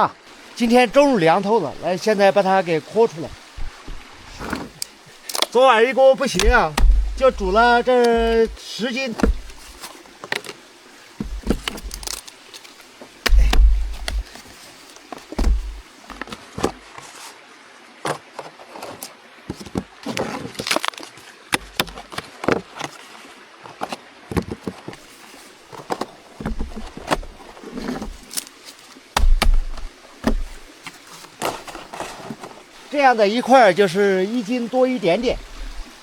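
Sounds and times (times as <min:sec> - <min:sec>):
wax knocking and scraping: 0:03.5 - 0:05.6, 0:06.3 - 0:10.6, 0:11.2 - 0:16.8, 0:25.7 - 0:32.7, 0:35.2 - 0:36.0
heavy low thumps: 0:03.6 - 0:04.1, 0:06.4 - 0:08.6, 0:09.2 - 0:09.7, 0:11.2 - 0:12.1, 0:13.2 - 0:14.3, 0:15.4 - 0:15.8, 0:29.2 - 0:30.7.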